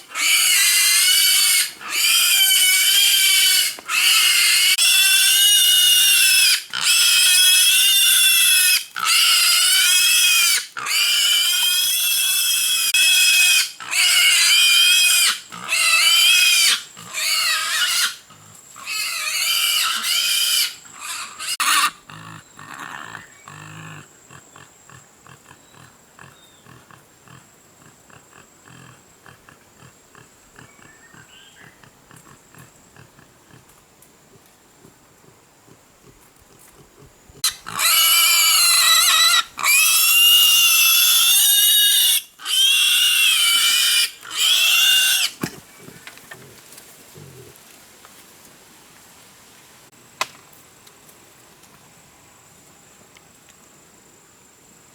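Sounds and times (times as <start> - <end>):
wild boar squealing: 0.0 - 24.0, 37.4 - 45.4.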